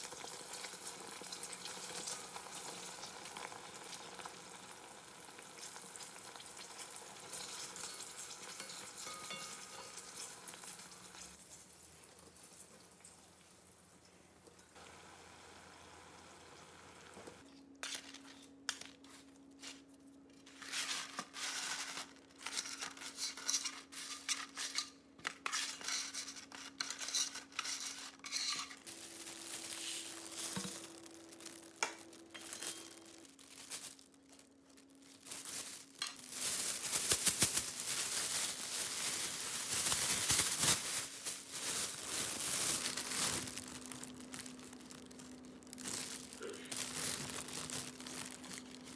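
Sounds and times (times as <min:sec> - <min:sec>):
dishes and utensils clinking: 0:07.3 - 0:10.7, 0:25.6 - 0:28.9
faint steady hum: 0:07.9 - 0:20.4, 0:28.2 - 0:48.9
rustling and crinkling: 0:17.2 - 0:48.9.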